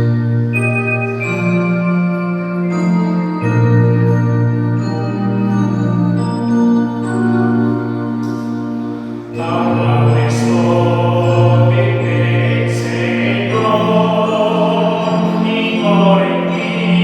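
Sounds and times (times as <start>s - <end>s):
sustained keyboard accompaniment: 0.0s - 17.0s
man singing a hymn: 9.4s - 17.0s.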